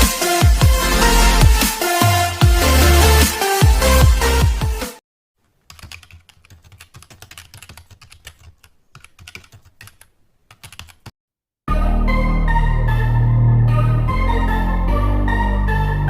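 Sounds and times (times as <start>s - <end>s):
intro music: 0.0s - 5.0s, 11.7s - 16.0s.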